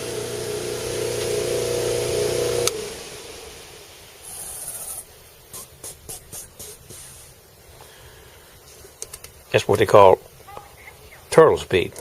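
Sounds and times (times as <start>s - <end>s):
bench buffer motor hum: 0.0s - 4.0s
short hiss: 3.9s - 9.4s.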